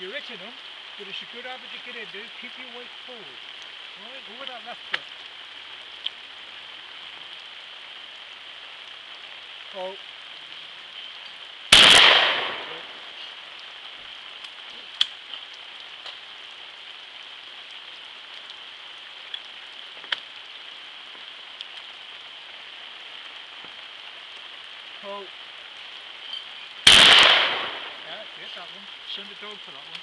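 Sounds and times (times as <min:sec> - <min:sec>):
steady high hiss: 0:00.0 - 0:30.0
faint sharp clicks: 0:04.9 - 0:05.1, 0:14.4 - 0:16.2, 0:19.3 - 0:20.3
shotgun shot: 0:11.7 - 0:12.9, 0:26.9 - 0:28.0.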